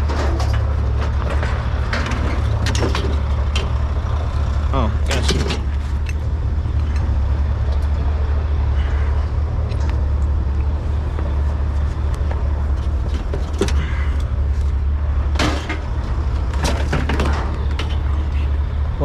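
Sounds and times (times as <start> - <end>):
sharp knocks and clanks: 0.0 - 4.4, 5.0 - 7.9, 11.0 - 18.6
vehicle engine running: 0.0 - 19.0.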